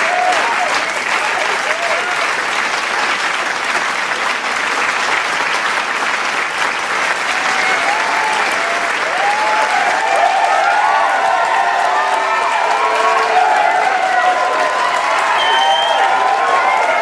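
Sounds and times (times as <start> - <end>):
crowd cheering and whooping: 0.0 - 2.3, 7.2 - 17.0
crowd applauding: 0.0 - 17.0.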